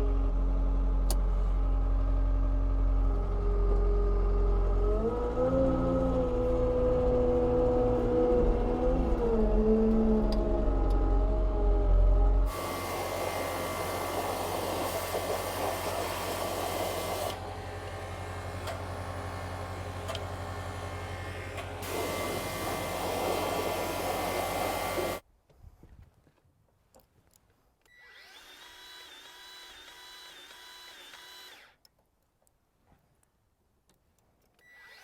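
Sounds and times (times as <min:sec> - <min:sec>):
cordless grease gun motor running: 0:12.5 - 0:25.2, 0:27.9 - 0:31.9.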